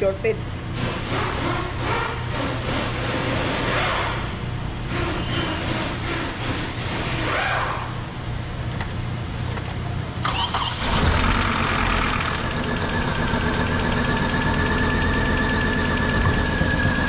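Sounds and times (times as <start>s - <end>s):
engine cranking on starter: 10.2s - 17.0s
engine idling with misfire: 10.2s - 17.0s.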